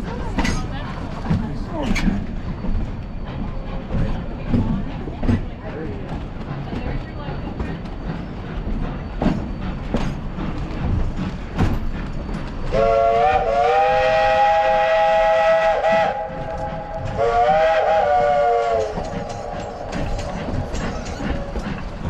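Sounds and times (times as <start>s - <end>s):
train cars rattling on rails: 0.0s - 22.0s
steam locomotive whistle: 12.7s - 20.1s.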